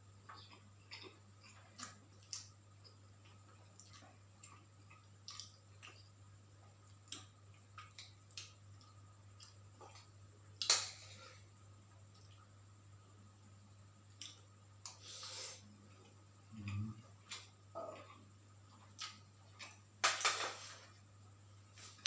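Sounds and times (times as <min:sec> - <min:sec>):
chewing: 0:00.2 - 0:10.1.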